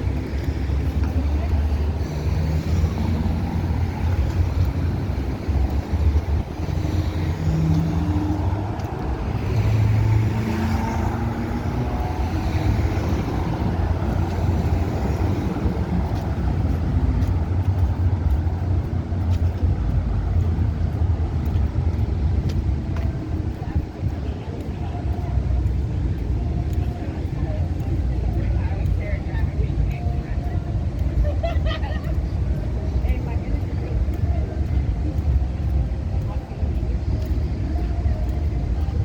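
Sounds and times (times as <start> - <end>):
passing cars rumbling: 0.0 - 39.0.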